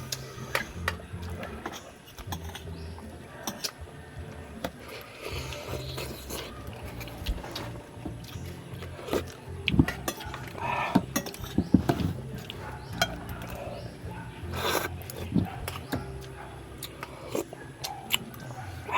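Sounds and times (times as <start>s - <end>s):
utensils clicking against dishes: 0.0s - 3.8s, 8.3s - 13.9s.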